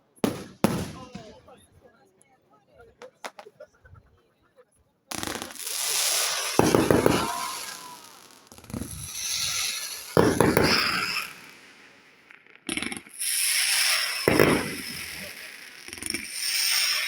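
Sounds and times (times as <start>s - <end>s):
fireworks booming and crackling: 0.2s - 1.6s, 5.1s - 17.0s.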